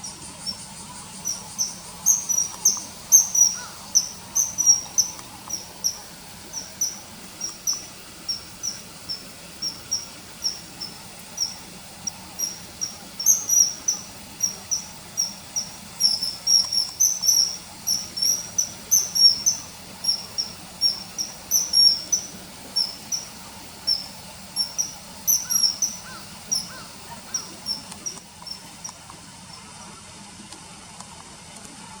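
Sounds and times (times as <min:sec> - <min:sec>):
kingfisher whistling calls: 0:00.0 - 0:29.0.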